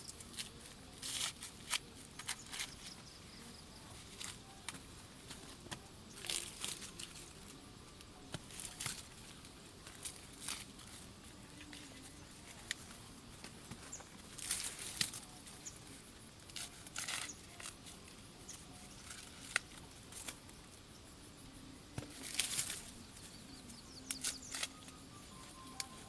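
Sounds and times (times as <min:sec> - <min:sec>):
leaves rustling and crackling: 0:00.0 - 0:20.7, 0:22.0 - 0:26.0
stalks snapping: 0:14.4 - 0:15.3, 0:16.4 - 0:17.9, 0:19.0 - 0:20.4, 0:22.0 - 0:22.9, 0:24.0 - 0:25.0.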